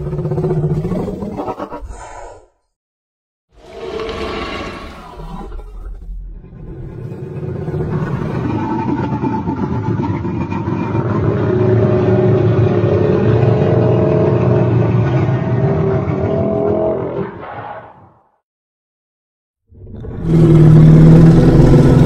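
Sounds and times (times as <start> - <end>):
monster roar: 7.6 - 17.9, 19.8 - 22.0.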